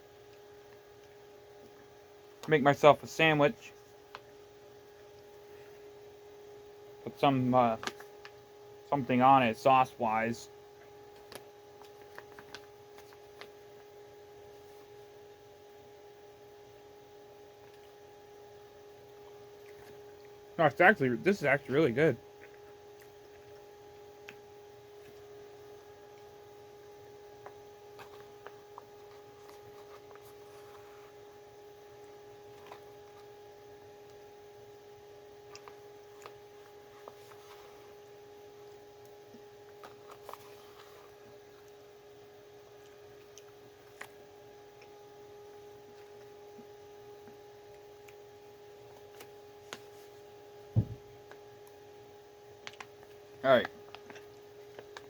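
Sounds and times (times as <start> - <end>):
faint electrical hum: 0.0 - 55.0
dull thump: 50.8 - 51.0.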